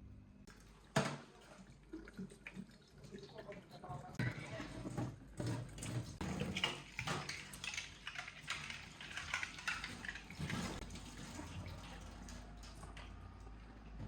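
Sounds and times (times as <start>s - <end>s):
water running into sink: 0.5s - 13.3s.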